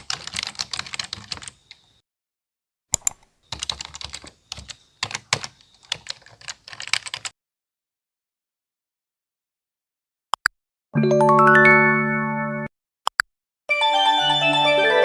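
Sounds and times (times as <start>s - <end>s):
keyboard typing clicks: 0.0s - 1.8s, 3.0s - 7.3s.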